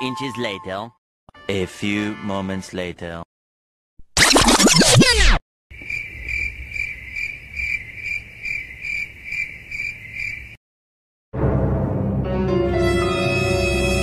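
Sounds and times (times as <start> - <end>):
crickets chirping: 5.7 - 10.6.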